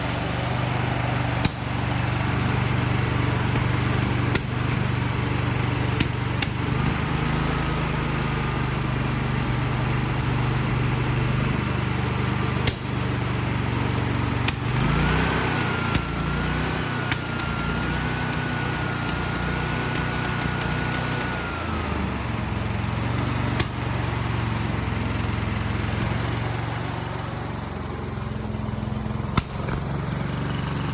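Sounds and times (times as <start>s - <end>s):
small engine sputtering: 0.0s - 30.9s
sharp pops: 1.1s - 5.0s, 5.7s - 6.8s, 12.6s - 13.2s, 14.4s - 17.6s, 23.5s - 24.0s, 29.2s - 30.9s.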